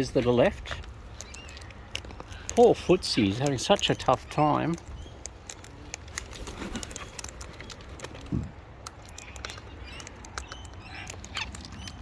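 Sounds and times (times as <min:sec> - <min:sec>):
parrot claws and beaks tapping: 0:01.1 - 0:12.0
parrots chirping: 0:08.9 - 0:12.0.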